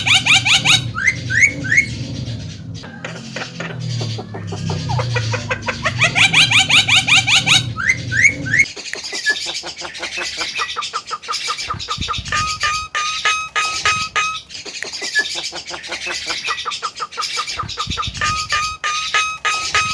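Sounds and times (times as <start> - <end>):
low hum: 0.0 - 8.7.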